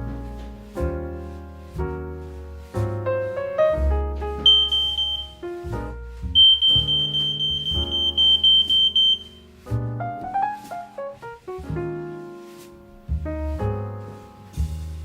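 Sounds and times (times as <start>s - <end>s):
piano music: 0.0s - 15.0s
smoke alarm beeping: 4.5s - 5.4s, 6.4s - 9.4s.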